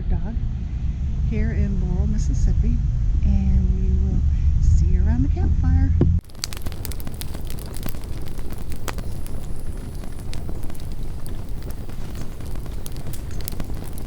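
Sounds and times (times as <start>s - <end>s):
wind rumble on microphone: 0.0s - 14.0s
campfire crackling and popping: 6.2s - 14.0s.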